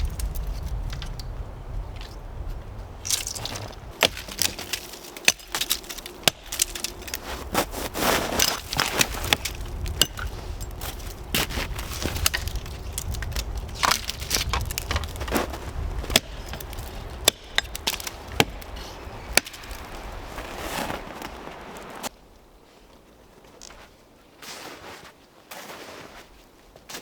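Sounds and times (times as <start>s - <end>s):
steady low rumble: 0.0s - 22.1s
wood cracking and knocking: 0.0s - 22.1s.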